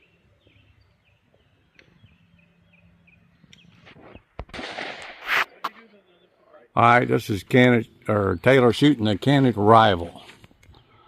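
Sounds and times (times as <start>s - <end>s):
faint bird chirping: 0.0s - 4.4s, 5.5s - 9.4s.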